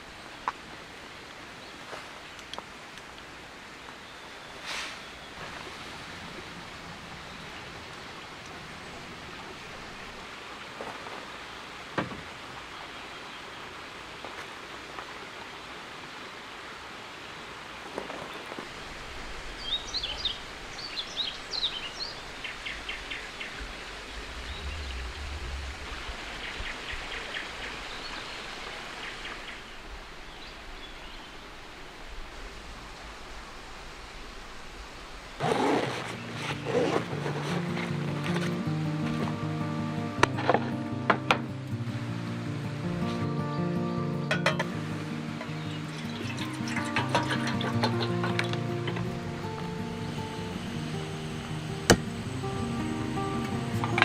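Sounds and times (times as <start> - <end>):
steady hiss: 0.0 - 35.5, 36.1 - 54.0.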